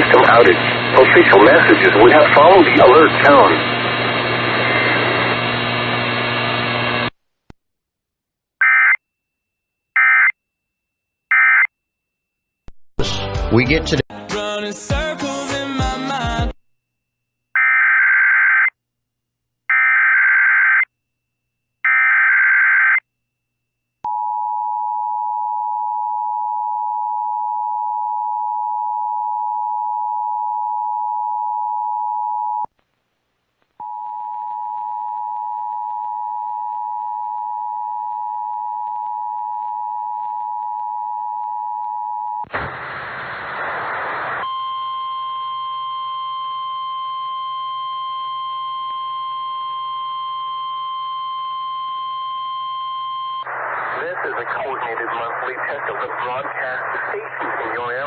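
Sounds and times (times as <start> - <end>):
noisy burst: 42.5 - 44.4, 53.5 - 58.0.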